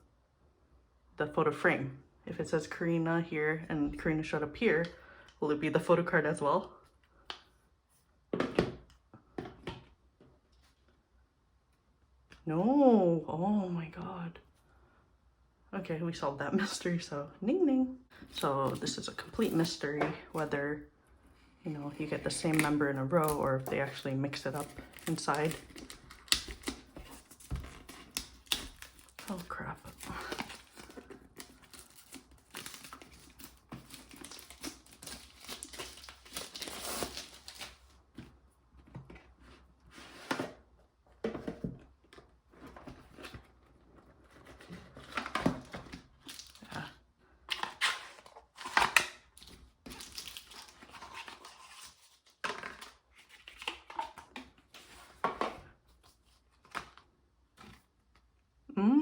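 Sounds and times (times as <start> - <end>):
packaging crinkling and tearing: 22.0 - 38.0, 44.3 - 46.8, 47.5 - 54.4.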